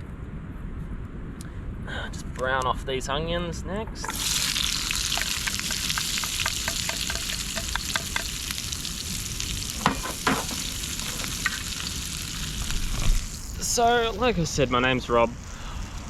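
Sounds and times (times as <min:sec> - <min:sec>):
onions sizzling in a pan: 0:04.1 - 0:16.0
spatter crackles: 0:04.1 - 0:16.0.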